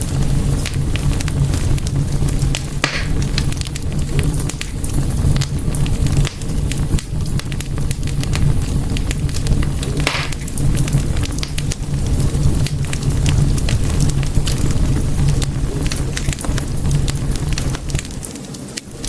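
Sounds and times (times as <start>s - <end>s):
fire crackling and popping: 0.0s - 19.0s
low rumble of flames: 0.0s - 19.0s.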